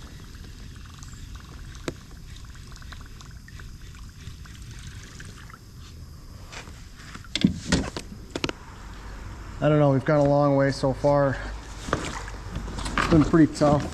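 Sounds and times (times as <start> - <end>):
paddle splashing in water: 11.7 - 13.9.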